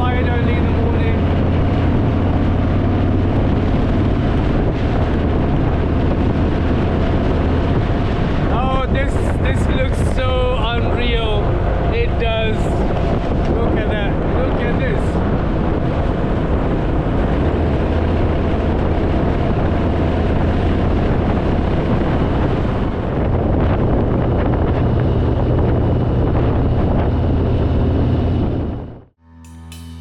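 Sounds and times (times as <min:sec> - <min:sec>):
motorcycle engine running: 0:00.0 - 0:14.3
wind buffeting microphone: 0:00.0 - 0:29.1.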